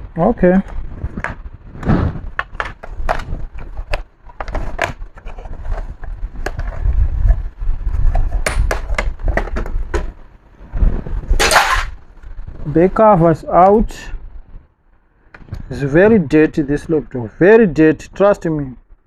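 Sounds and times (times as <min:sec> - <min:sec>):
handling rumble: 0:00.0 - 0:17.7
loud scraping: 0:10.7 - 0:12.0.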